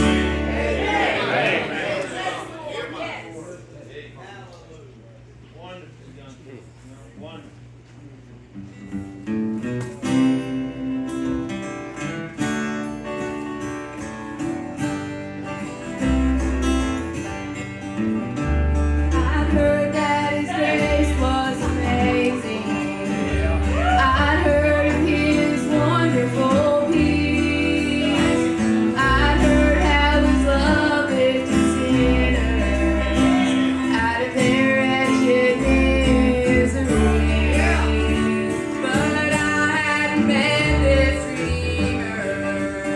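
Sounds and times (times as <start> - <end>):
acoustic guitar strumming: 0.0 - 2.5, 8.7 - 42.9
voices singing: 0.0 - 3.3, 19.2 - 42.9
deep bass notes: 23.2 - 39.5.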